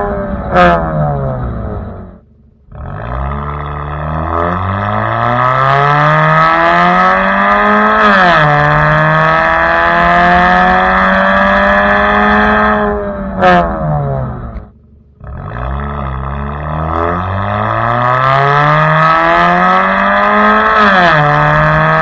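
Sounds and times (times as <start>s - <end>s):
car engine accelerating hard: 0.0s - 22.0s.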